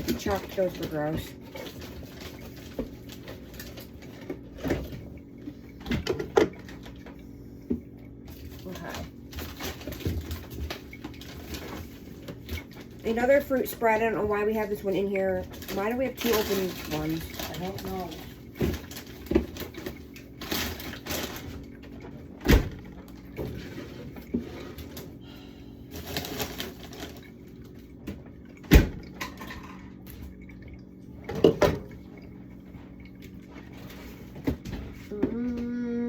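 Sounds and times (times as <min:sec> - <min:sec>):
jars and containers clunking: 0:00.0 - 0:14.9, 0:26.0 - 0:33.7.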